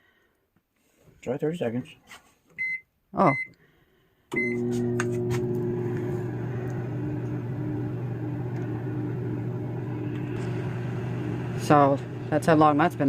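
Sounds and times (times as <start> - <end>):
microwave fan noise: 4.4 - 13.0
microwave oven humming: 4.4 - 13.0.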